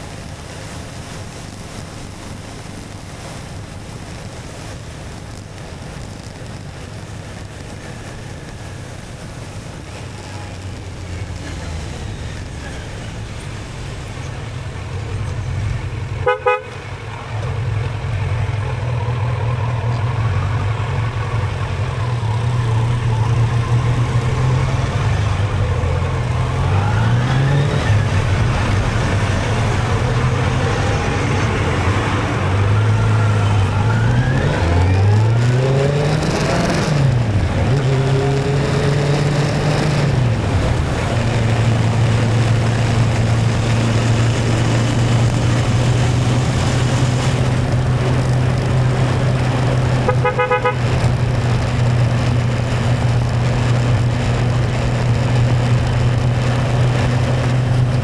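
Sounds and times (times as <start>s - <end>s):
motorcycle engine accelerating: 0.0s - 58.0s
horn beep: 50.0s - 50.9s.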